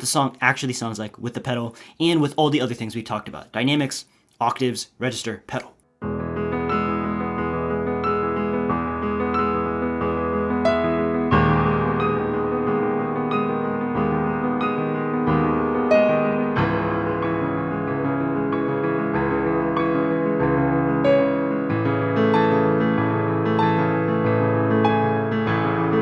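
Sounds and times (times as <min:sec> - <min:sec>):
solo piano playing pop song: 0:06.0 - 0:26.0.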